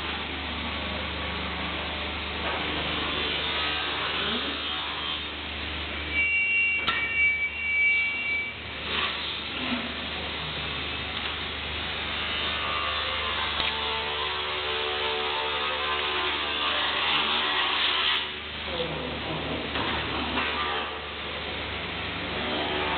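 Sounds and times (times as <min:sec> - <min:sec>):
thin high whine: 0:05.7 - 0:10.0
saw machine humming: 0:10.1 - 0:19.1.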